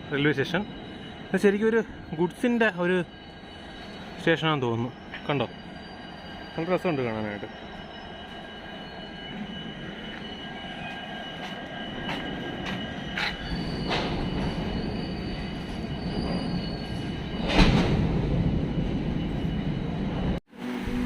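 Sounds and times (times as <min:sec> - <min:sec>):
high-pitched metallic tones: 0:00.0 - 0:18.1
train rumbling on track: 0:00.0 - 0:21.0.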